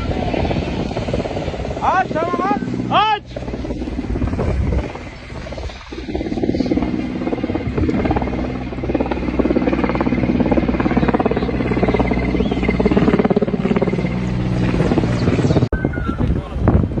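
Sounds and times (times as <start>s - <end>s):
helicopter engine drone: 0.0s - 16.6s
helicopter rotor chop: 0.0s - 17.0s.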